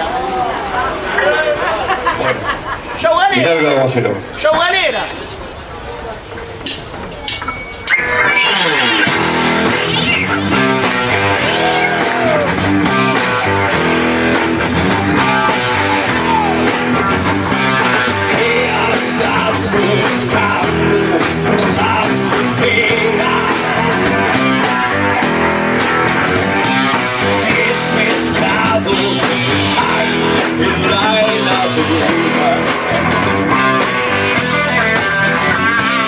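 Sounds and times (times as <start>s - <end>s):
hard rock band playing: 6.7s - 36.0s
person singing: 14.9s - 16.9s, 17.6s - 25.5s, 26.6s - 33.1s.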